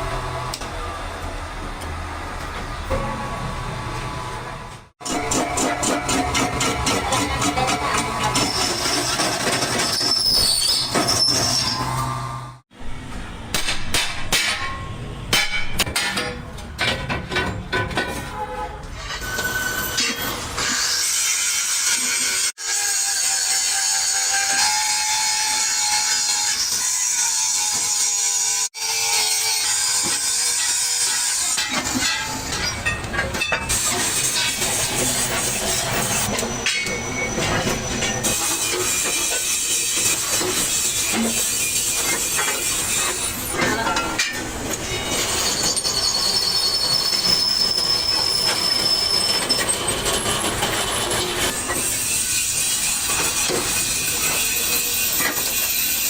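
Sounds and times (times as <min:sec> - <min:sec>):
metal grinding on metal: 0:05.0 - 0:12.2
power tool grinding steel: 0:05.0 - 0:12.3, 0:19.0 - 0:56.0
high-pitched squeal: 0:05.0 - 0:12.6, 0:33.7 - 0:56.0.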